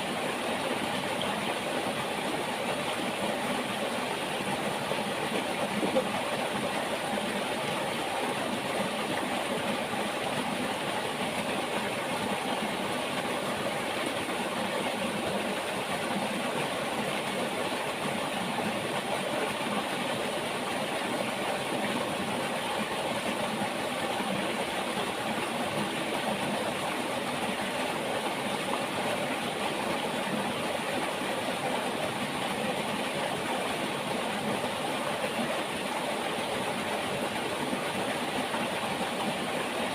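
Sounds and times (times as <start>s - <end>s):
river water flowing: 0.0s - 39.9s.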